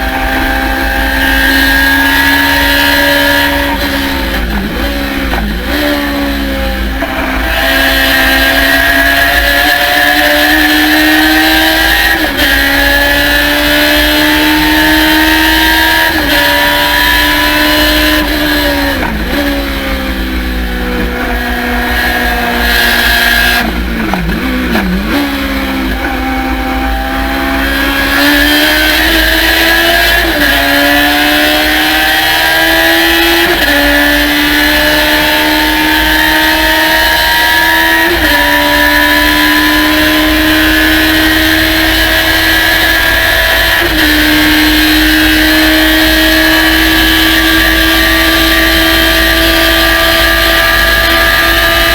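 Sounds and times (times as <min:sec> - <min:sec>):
race car engine revving: 0:00.0 - 0:51.9.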